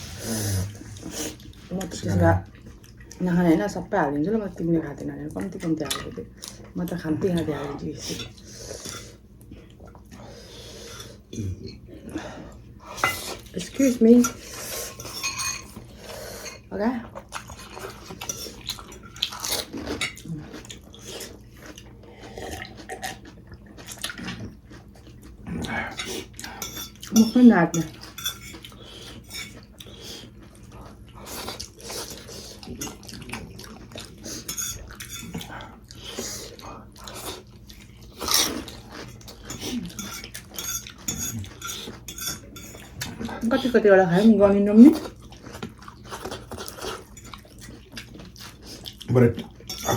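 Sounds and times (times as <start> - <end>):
cutlery clinking on dishes: 13.0 - 13.4, 14.2 - 15.8, 25.9 - 28.7, 29.3 - 29.6, 34.4 - 35.4, 39.3 - 43.2, 49.6 - 49.9
person chewing: 14.4 - 27.1, 27.9 - 43.3, 44.9 - 49.9.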